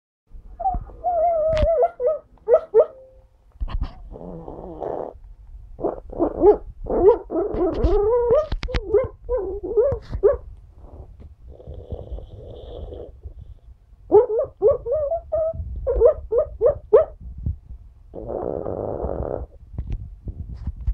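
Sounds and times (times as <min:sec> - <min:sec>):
dog whimpering and yipping: 0:00.6 - 0:02.9, 0:05.9 - 0:10.4, 0:14.1 - 0:17.1
muffled dog woofs: 0:00.6 - 0:03.0, 0:05.8 - 0:10.5, 0:14.1 - 0:17.2
dog snoring breath: 0:04.1 - 0:05.2, 0:10.8 - 0:13.7, 0:18.1 - 0:19.6.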